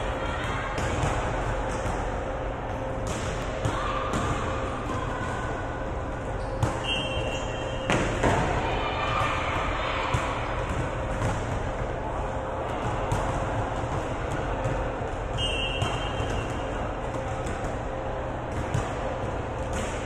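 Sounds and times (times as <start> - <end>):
players' voices echoing: 0.0 - 20.0
shoes squeaking: 6.3 - 8.0
basketball bouncing on court: 10.1 - 11.9, 12.7 - 17.8.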